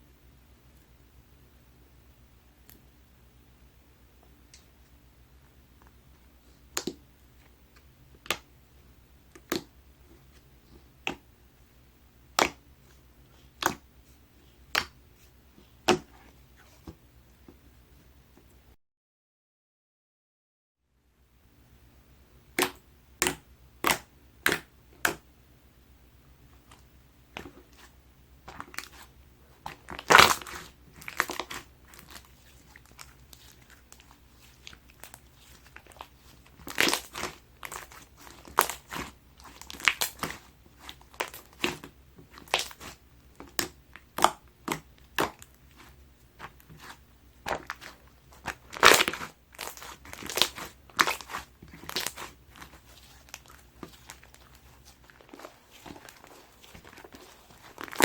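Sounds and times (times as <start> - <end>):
slime squishing: 9.3 - 11.3, 12.3 - 17.0, 22.5 - 25.2, 26.5 - 58.0
slime crackling and crunching: 27.4 - 58.0.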